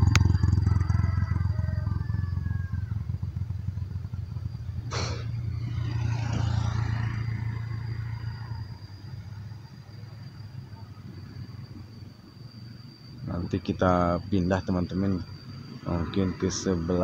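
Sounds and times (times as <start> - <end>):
vehicle engine running: 0.0 - 17.0
short hiss: 4.9 - 5.3.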